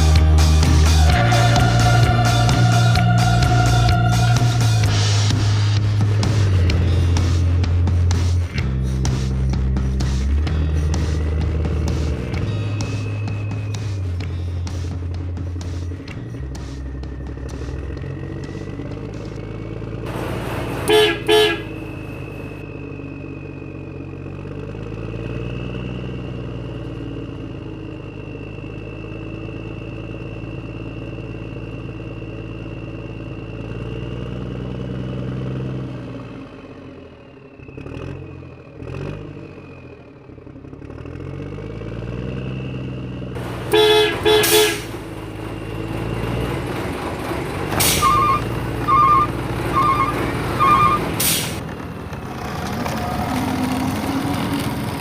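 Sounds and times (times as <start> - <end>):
truck engine revving: 0.0 - 55.0
truck horn toots: 20.6 - 22.5, 43.4 - 46.4, 47.7 - 51.6.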